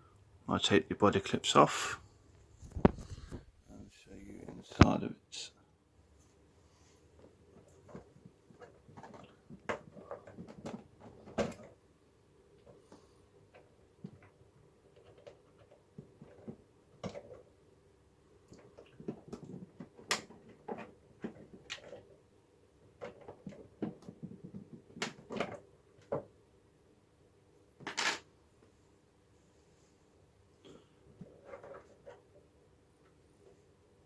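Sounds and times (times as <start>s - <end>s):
plastic clicks and knocks: 18.5s - 22.1s.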